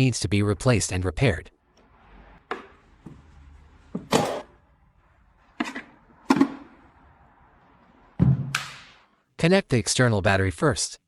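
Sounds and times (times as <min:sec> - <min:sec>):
tools clunking and knocking: 0:02.4 - 0:04.6, 0:05.5 - 0:06.9.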